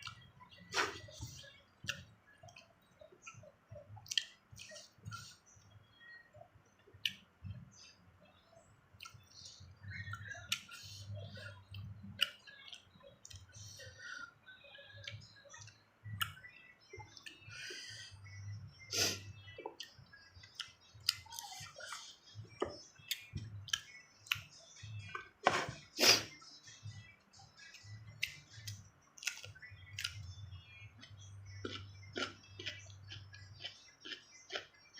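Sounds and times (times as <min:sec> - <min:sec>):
wet mouth clicks: 0:04.0 - 0:04.8
crunchy bites and chewing: 0:31.6 - 0:34.7.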